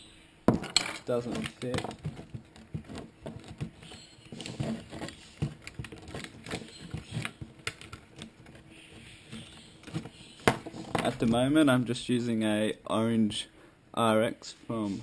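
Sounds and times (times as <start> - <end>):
hands handling plastic toy: 0.5 - 11.5.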